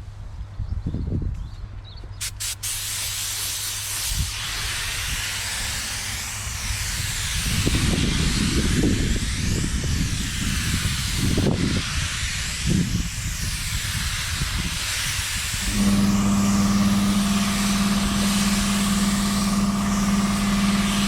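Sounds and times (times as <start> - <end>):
paint spray gun hissing: 2.2 - 21.0
low rumble: 15.6 - 21.0.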